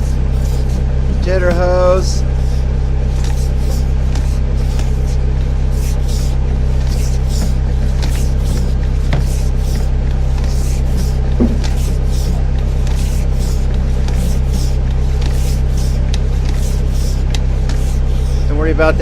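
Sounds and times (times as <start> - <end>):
rhythmic water spray hiss: 0.0 - 0.9, 2.4 - 18.5
engine humming: 0.0 - 19.0
short knock: 11.4 - 11.8.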